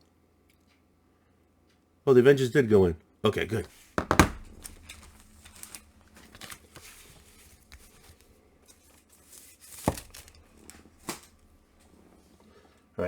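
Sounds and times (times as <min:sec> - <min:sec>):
comic books rustling: 0:03.6 - 0:12.7
firm knock: 0:04.0 - 0:04.8.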